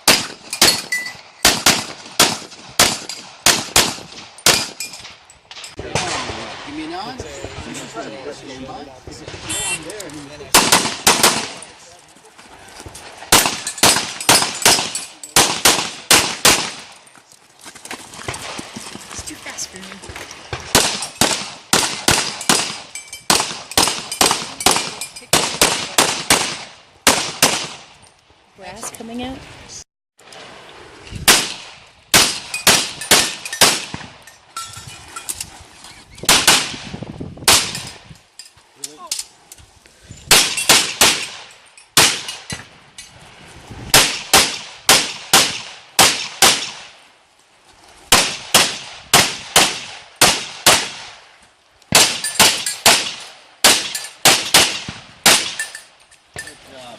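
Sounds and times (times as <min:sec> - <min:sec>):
pistol shots echoing: 0:00.0 - 0:04.8, 0:10.5 - 0:11.6, 0:13.3 - 0:16.9, 0:20.7 - 0:27.8, 0:31.3 - 0:34.1, 0:40.3 - 0:42.5, 0:44.0 - 0:46.9, 0:48.1 - 0:51.2, 0:51.9 - 0:55.8.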